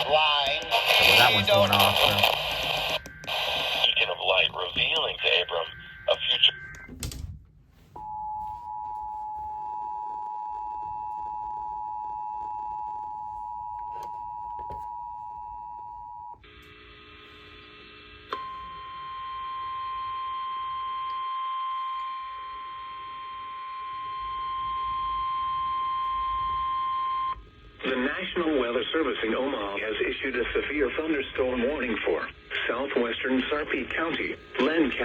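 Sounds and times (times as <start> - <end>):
two-tone alarm: 18.3 - 27.4.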